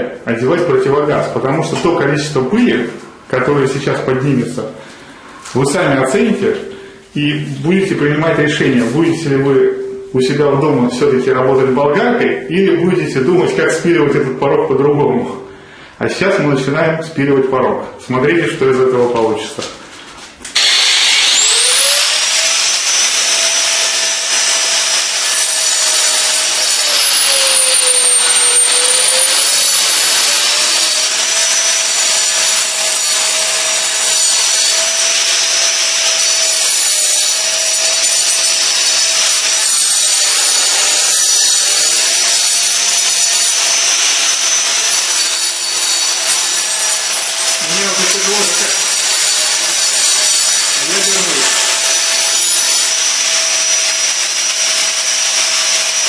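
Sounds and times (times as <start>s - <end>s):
angle grinder cutting concrete: 20.5s - 56.0s.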